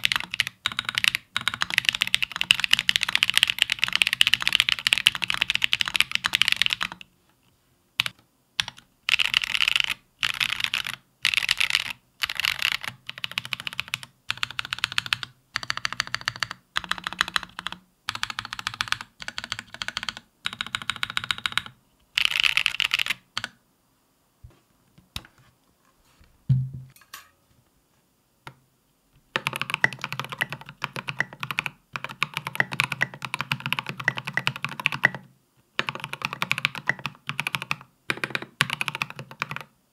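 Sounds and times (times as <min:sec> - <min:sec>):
mechanical keyboard typing: 0:00.0 - 0:07.1, 0:08.0 - 0:23.6, 0:29.4 - 0:39.7
low thump: 0:26.5 - 0:26.9.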